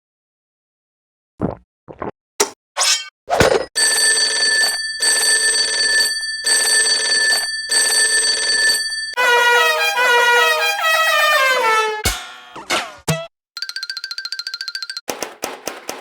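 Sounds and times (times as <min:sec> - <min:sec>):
telephone bell ringing: 0:03.8 - 0:09.4.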